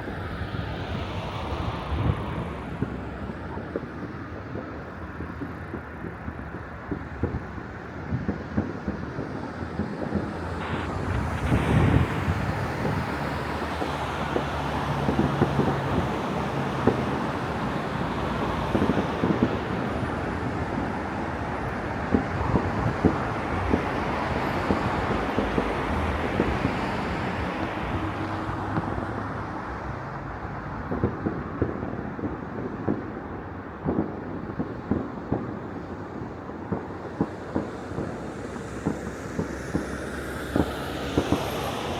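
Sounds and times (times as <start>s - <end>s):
distant fireworks bangs and pops: 2.0s - 41.9s
steady background rush: 9.2s - 18.1s.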